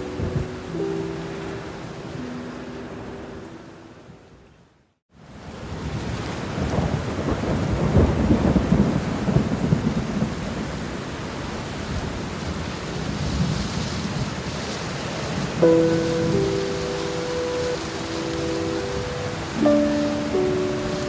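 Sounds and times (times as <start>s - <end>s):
steady rain: 0.0s - 21.0s
rolling thunder: 5.9s - 10.8s.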